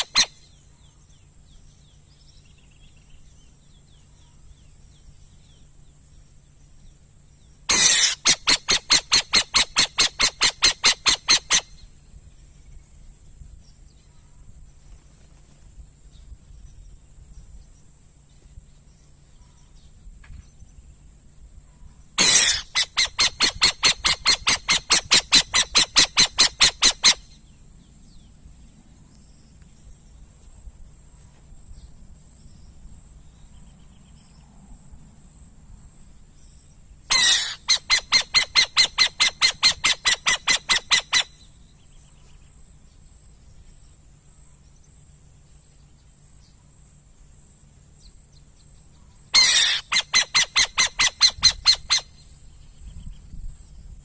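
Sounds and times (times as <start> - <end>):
owl harsh pulsed calls: 0.0 - 0.6, 7.7 - 12.0, 22.2 - 27.4, 37.1 - 41.6, 49.3 - 52.3.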